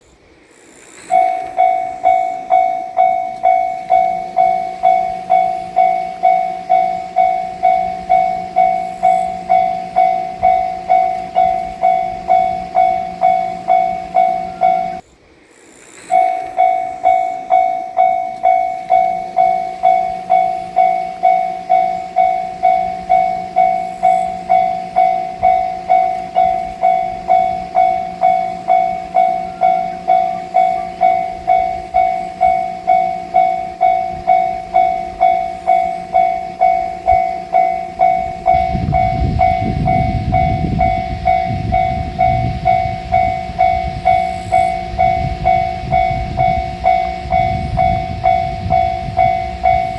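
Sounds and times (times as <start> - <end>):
diesel railcar rumbling past: 0.0 - 15.1, 15.8 - 49.9
level crossing alarm bell: 1.1 - 15.0, 16.1 - 49.9.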